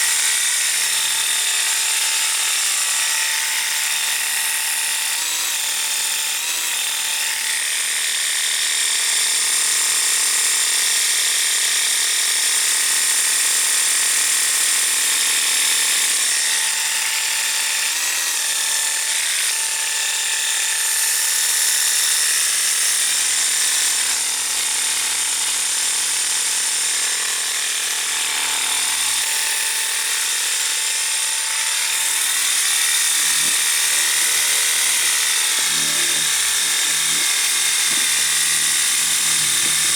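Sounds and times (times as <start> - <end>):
pressure washer running: 32.0 - 39.9.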